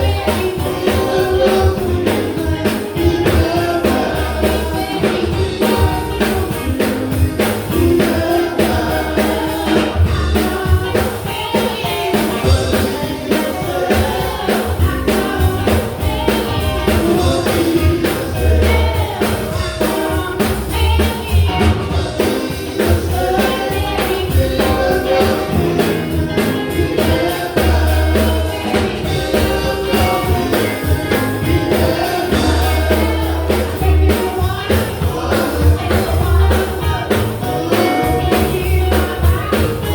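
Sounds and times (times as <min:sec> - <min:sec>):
bass: 0:00.0 - 0:39.9
drum kit: 0:00.0 - 0:39.9
electric guitar: 0:00.0 - 0:39.9
gospel group singing: 0:00.0 - 0:39.9
keyboard: 0:00.0 - 0:39.9.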